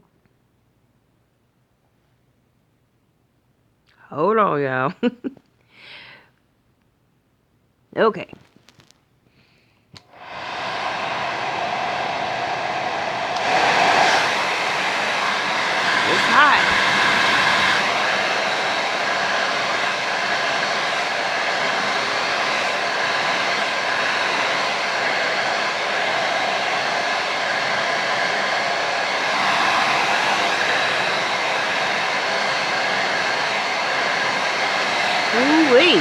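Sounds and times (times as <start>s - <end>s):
hair dryer running: 10.0s - 36.0s.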